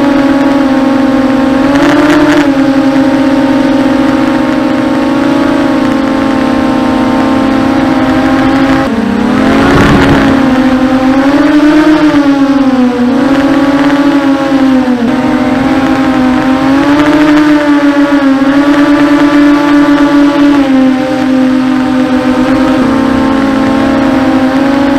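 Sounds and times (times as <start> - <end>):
quadcopter motors whining: 0.0 - 24.9.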